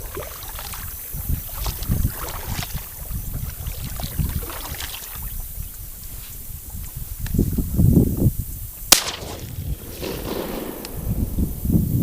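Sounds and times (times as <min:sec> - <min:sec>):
paddle splashing water: 0:00.0 - 0:05.7
wind rumbling on microphone: 0:00.0 - 0:12.0.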